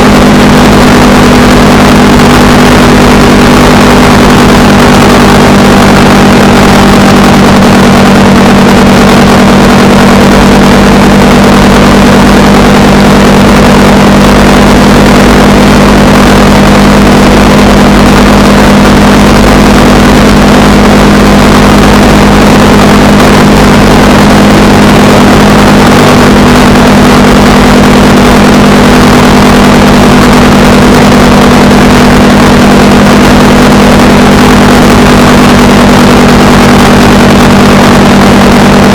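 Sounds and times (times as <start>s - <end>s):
motorcycle engine cruising: 0.0s - 38.9s.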